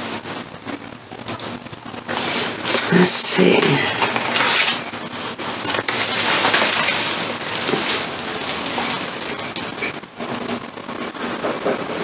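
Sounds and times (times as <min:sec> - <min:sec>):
packaging crinkling: 0:03.9 - 0:12.0.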